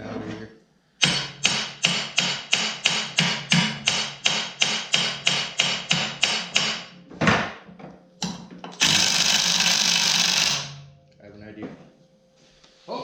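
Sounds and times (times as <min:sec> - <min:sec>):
hammer striking metal: 0:01.0 - 0:06.9.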